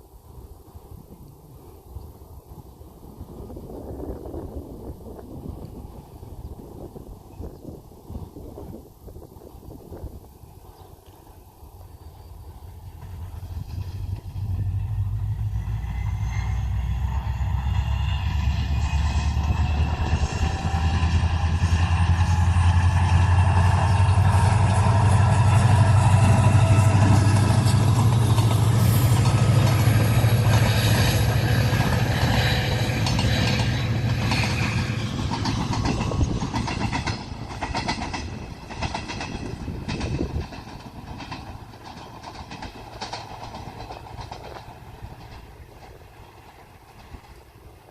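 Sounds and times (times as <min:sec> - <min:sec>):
passenger train rumbling past: 0:00.0 - 0:47.9
wheels clacking over rail joints: 0:10.6 - 0:15.8, 0:17.1 - 0:47.9.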